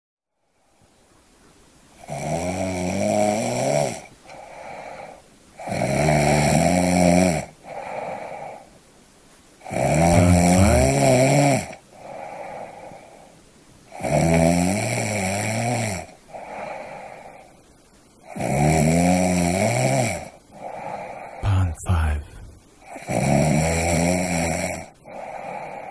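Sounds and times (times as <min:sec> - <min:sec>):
person snoring: 0:05.6 - 0:07.4, 0:09.7 - 0:11.6, 0:21.0 - 0:22.6.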